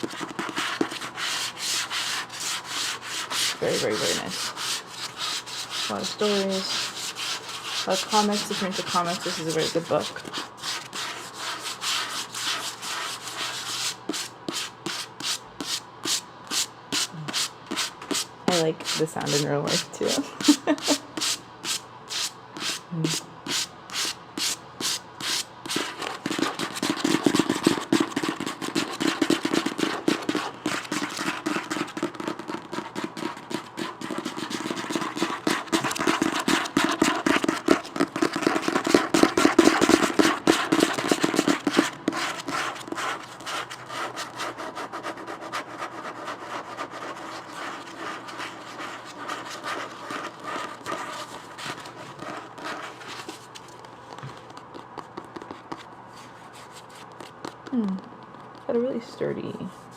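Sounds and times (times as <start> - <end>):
fingers tapping on book: 0.0 - 1.3, 25.7 - 43.6, 47.8 - 55.9, 57.0 - 58.7
fingers scratching over book: 0.0 - 57.8.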